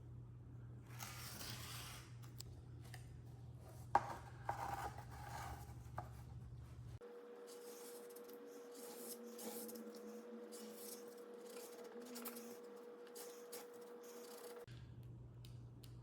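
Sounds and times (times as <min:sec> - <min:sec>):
faint hum: 0:00.0 - 0:16.0
scratching and rubbing strokes: 0:07.4 - 0:14.7.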